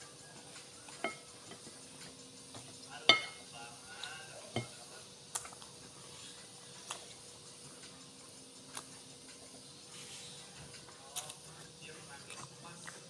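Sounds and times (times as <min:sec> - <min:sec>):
tableware clinking on plate: 0:01.0 - 0:01.7, 0:03.0 - 0:03.5, 0:04.5 - 0:04.8.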